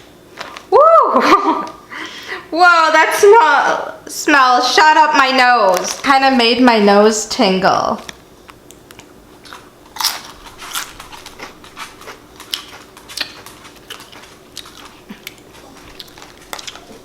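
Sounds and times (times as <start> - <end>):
crunching potato chips: 8.9 - 17.0.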